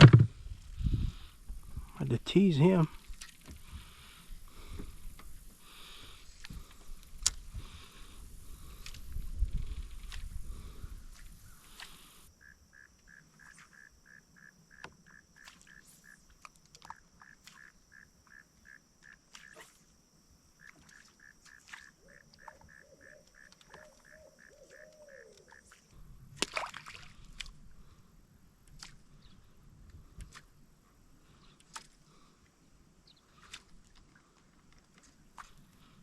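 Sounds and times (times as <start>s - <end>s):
loud knock or splash: 0.0s - 0.4s
regular chirping call: 11.4s - 19.6s, 20.6s - 25.8s.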